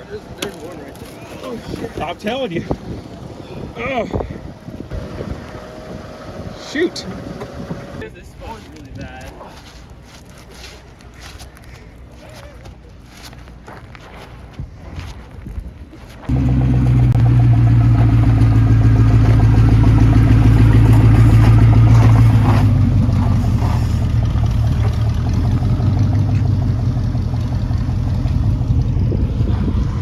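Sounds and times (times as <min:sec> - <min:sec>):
car engine at high revs: 0:16.3 - 0:30.0.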